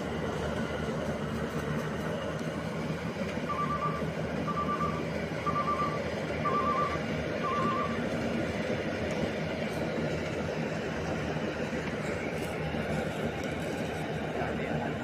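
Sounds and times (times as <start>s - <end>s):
harvester engine running: 0.0s - 15.0s
short warning beeps: 3.4s - 8.0s.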